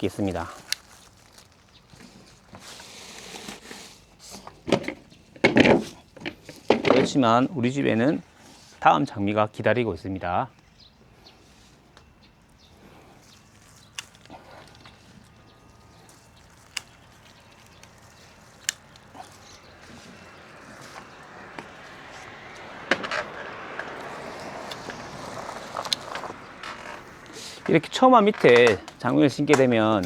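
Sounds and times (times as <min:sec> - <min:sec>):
rustling hiss: 0:11.1 - 0:28.3.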